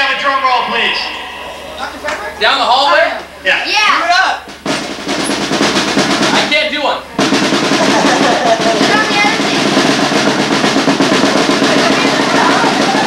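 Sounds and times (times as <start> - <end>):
fast drum roll: 0.0 - 13.0
faint voices: 11.3 - 13.0.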